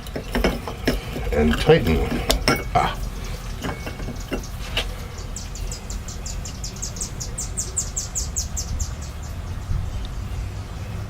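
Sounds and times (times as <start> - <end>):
high chirping trill: 2.6 - 9.6.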